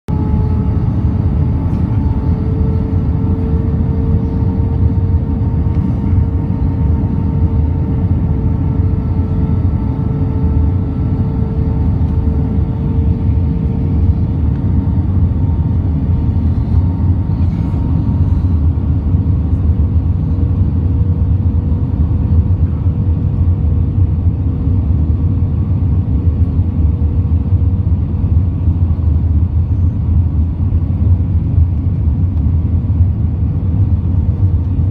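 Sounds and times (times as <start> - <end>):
airliner rumble and drone: 0.1 - 34.9.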